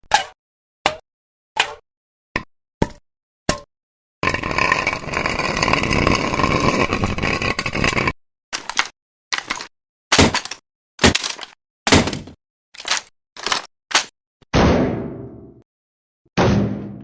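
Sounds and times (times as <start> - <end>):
metal clattering and scraping: 4.2 - 8.8.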